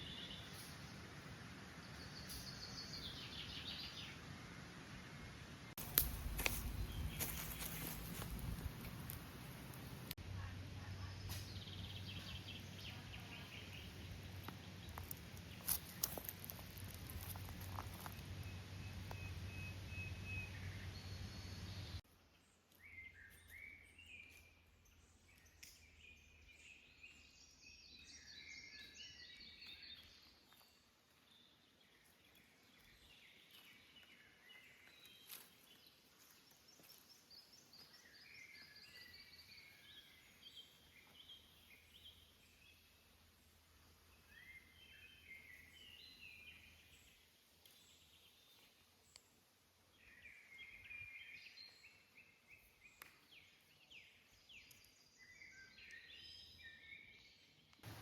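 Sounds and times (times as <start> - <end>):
small birds chirping: 0.0 - 4.3, 5.7 - 58.0.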